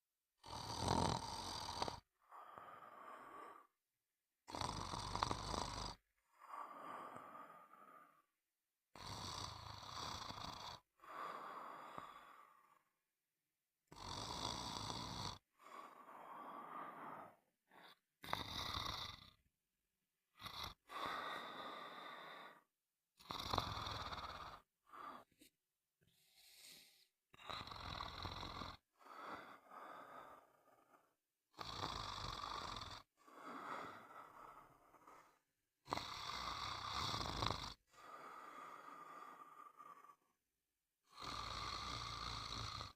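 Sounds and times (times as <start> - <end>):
loud snoring: 0.4 - 3.7, 4.4 - 8.2, 8.9 - 12.9, 13.9 - 19.5, 20.3 - 25.3, 27.3 - 40.2, 41.0 - 42.9
soft breathing: 24.6 - 27.2, 38.0 - 40.3.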